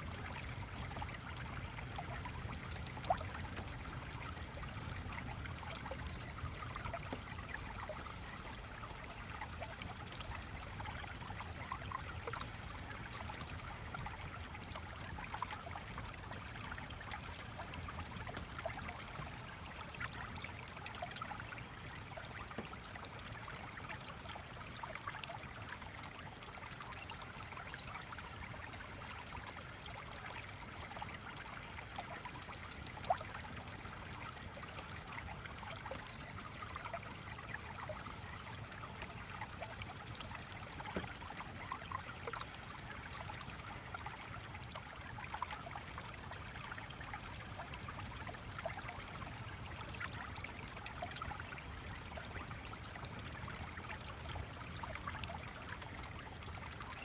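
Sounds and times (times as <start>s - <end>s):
stream water babbling: 0.0s - 57.0s.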